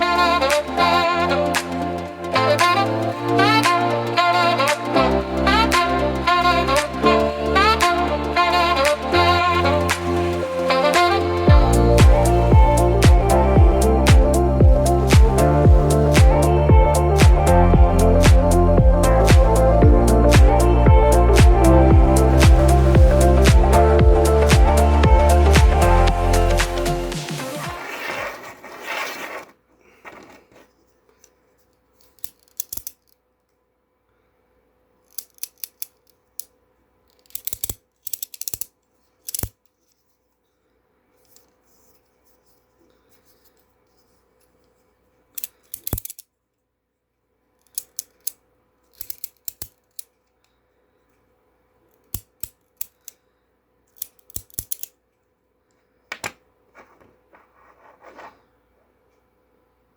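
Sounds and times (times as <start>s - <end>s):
fidget toy clicking: 32.0s - 33.2s, 35.0s - 39.7s, 45.3s - 46.3s, 47.6s - 50.3s, 51.9s - 53.2s, 53.9s - 55.0s.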